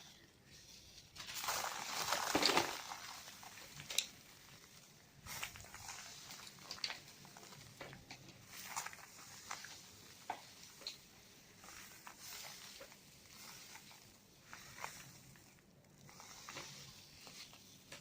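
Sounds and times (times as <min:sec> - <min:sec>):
cement crumbling crunches: 0:01.2 - 0:04.1.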